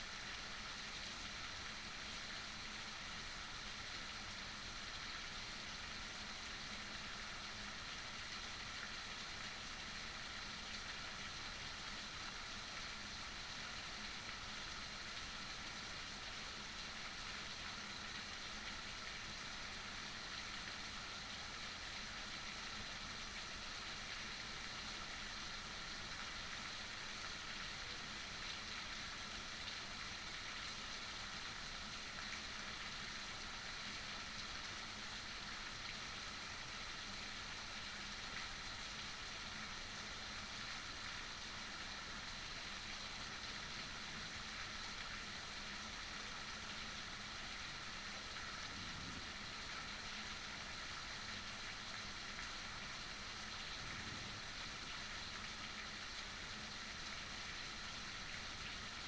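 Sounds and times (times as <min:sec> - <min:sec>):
heavy rain falling: 0:47.4 - 0:50.5, 0:51.3 - 0:56.4.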